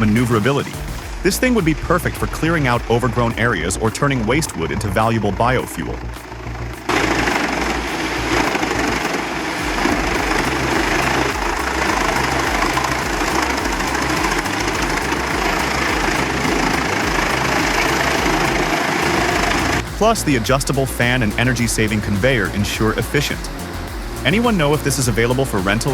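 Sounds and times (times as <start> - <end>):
wood grinder shredding wood: 5.4 - 20.4.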